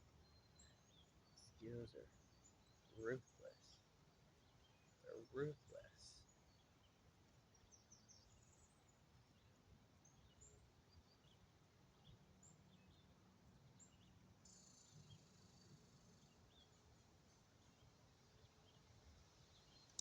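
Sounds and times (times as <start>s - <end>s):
high insect trill: 14.5s - 16.1s.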